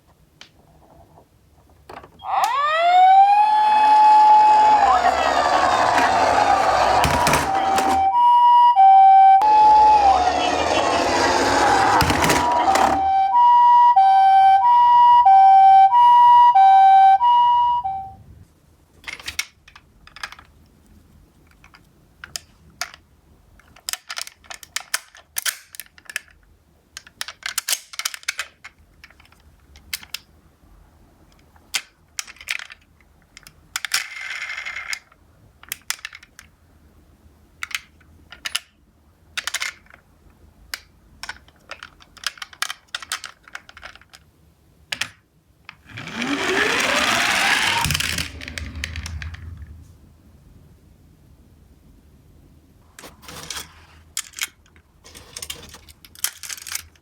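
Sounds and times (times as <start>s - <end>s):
two-tone ambulance siren: 2.2s - 18.2s, 46.0s - 49.4s
toy cars rattling: 3.6s - 8.1s, 9.4s - 13.2s, 19.0s - 20.6s, 31.7s - 36.5s, 39.4s - 40.0s, 41.2s - 44.3s, 45.8s - 49.6s, 53.0s - 57.0s
toy cars clacking on hard surface: 3.8s - 8.1s, 9.4s - 13.2s, 19.0s - 20.6s, 23.6s - 26.4s, 27.0s - 30.3s, 31.5s - 36.5s, 37.6s - 40.0s, 40.7s - 44.3s, 44.9s - 49.5s, 53.0s - 57.0s.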